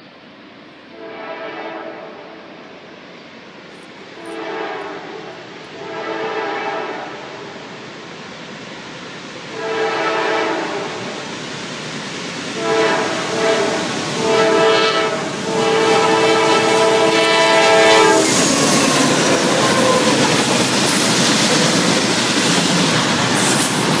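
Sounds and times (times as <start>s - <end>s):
train passing rumble and clatter: 0.0s - 24.0s
locomotive air horn blasts: 0.9s - 2.4s, 4.2s - 7.2s, 9.5s - 11.0s, 12.6s - 20.2s.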